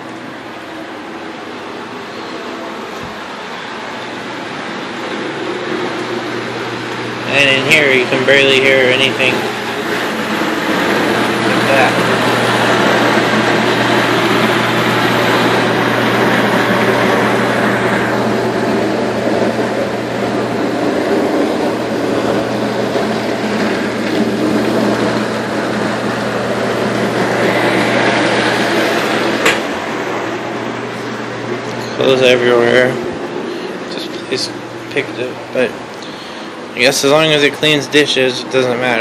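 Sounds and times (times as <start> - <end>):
dishwasher running: 0.0 - 39.0.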